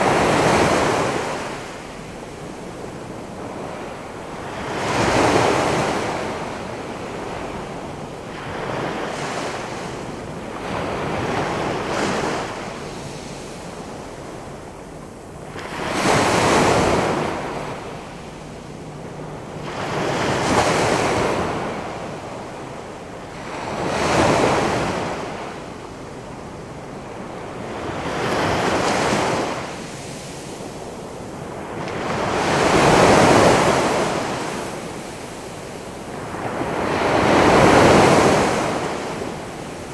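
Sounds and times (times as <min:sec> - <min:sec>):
ocean waves crashing: 0:00.0 - 0:14.8, 0:15.4 - 0:22.6, 0:31.4 - 0:39.9.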